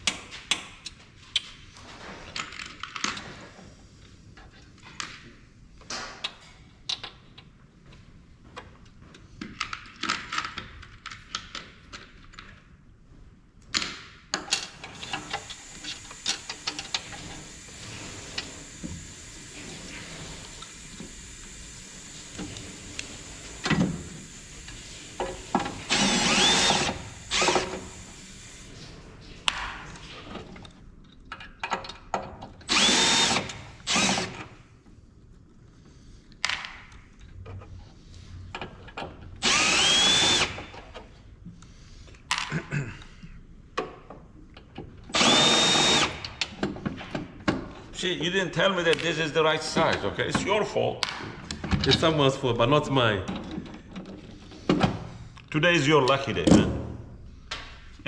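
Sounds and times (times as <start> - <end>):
power drill running: 14.9 - 28.8, 32.7 - 34.6, 39.4 - 40.8, 45.1 - 46.5.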